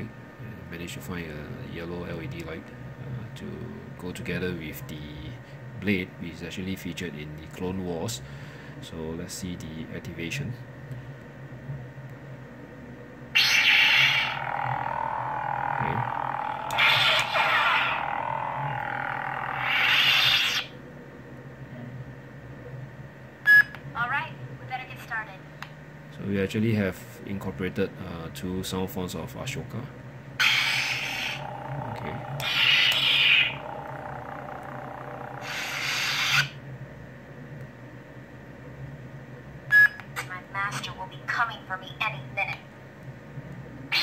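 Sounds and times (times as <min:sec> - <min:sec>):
electronic lightsaber hum: 0:12.8 - 0:21.9, 0:30.4 - 0:36.7.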